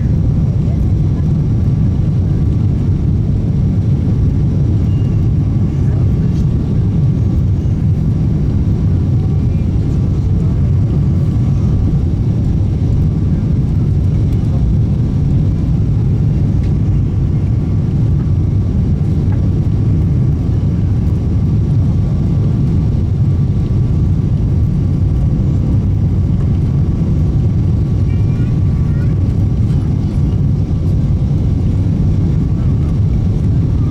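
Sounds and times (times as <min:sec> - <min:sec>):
airflow over fuselage: 0:00.0 - 0:33.9
airliner engine rumble: 0:00.0 - 0:33.9.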